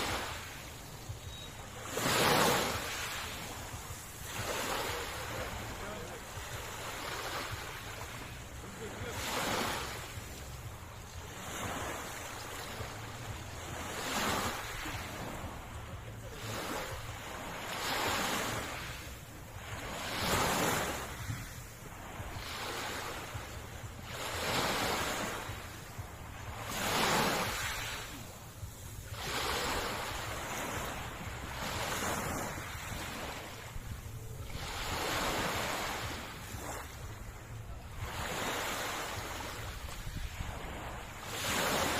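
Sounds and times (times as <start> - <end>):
sea waves washing ashore: 0.0 - 41.9
wind rumble on microphone: 18.1 - 41.9.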